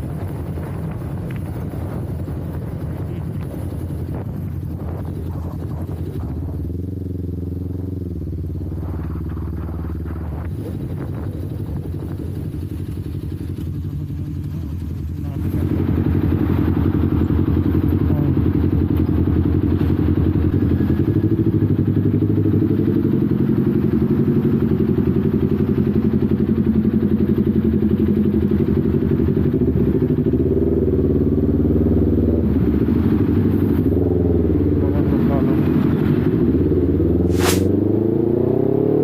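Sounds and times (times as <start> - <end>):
low wind rumble: 0.0 - 25.8
motorcycle engine running: 0.0 - 38.0.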